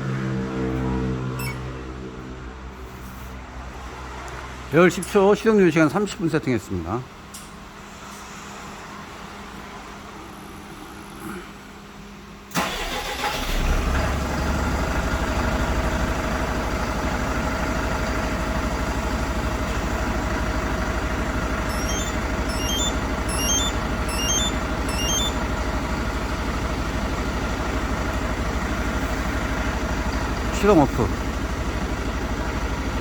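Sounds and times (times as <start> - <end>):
faint high beeps: 1.4 - 1.7, 21.7 - 25.4
diesel engine cranking and idling: 9.2 - 33.0.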